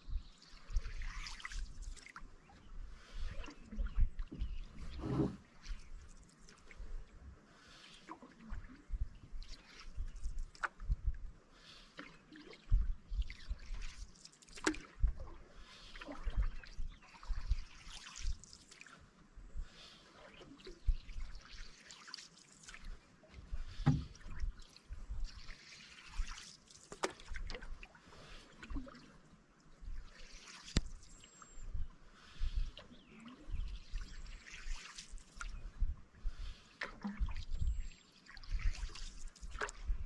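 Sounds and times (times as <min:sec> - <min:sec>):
water dripping off paddle: 0:00.5 - 0:02.6, 0:09.4 - 0:10.9, 0:12.0 - 0:19.0, 0:20.2 - 0:29.1, 0:29.8 - 0:31.2, 0:32.7 - 0:35.6, 0:36.5 - 0:37.5, 0:38.2 - 0:39.8.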